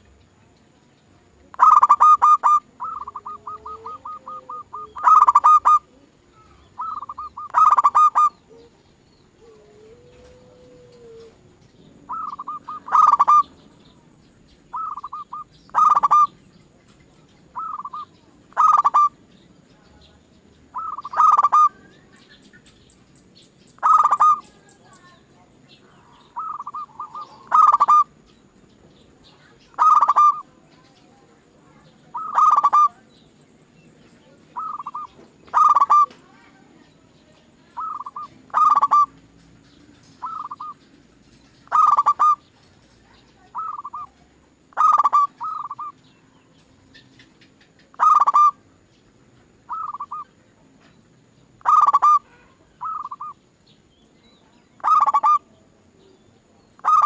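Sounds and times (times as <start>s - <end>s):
doves cooing: 1.5s - 19.3s, 20.7s - 22.0s, 23.8s - 25.0s, 26.0s - 28.4s, 29.7s - 31.0s, 31.9s - 33.3s, 34.3s - 36.3s, 37.7s - 48.8s, 49.6s - 50.4s, 51.5s - 53.4s, 54.8s - 55.5s, 56.6s - 57.0s.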